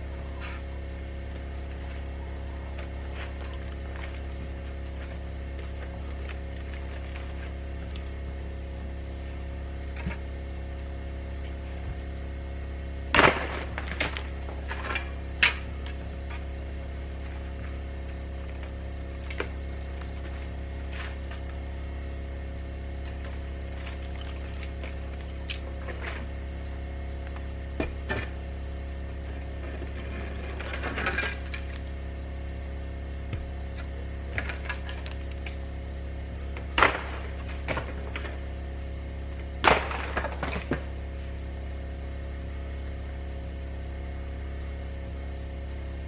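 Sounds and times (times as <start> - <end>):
steady low hum: 0.0 - 46.0
snow and ice knocked off metal roof: 13.1 - 15.6, 36.6 - 38.4, 39.6 - 41.0.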